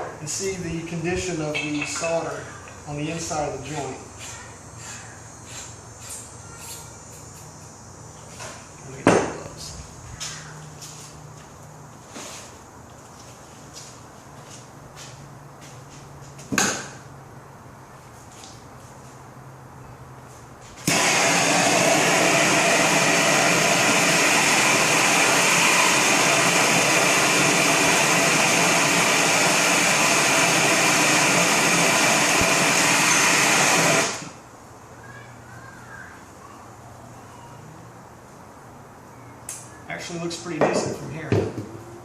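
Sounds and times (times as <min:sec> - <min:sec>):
gas torch flame hissing: 0:20.8 - 0:34.4.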